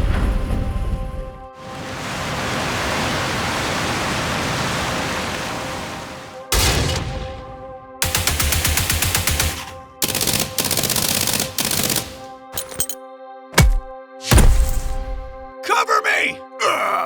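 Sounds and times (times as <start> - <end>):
automatic gunfire: 8.0 - 12.7.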